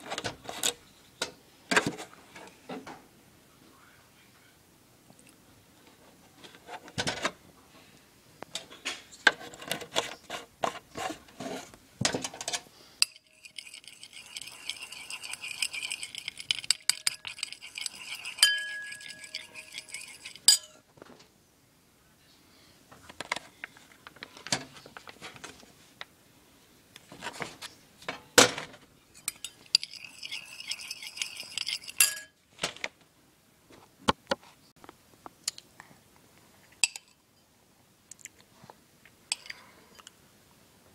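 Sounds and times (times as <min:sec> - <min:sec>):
utensils and dishes clinking: 0:12.4 - 0:20.8, 0:29.2 - 0:32.4.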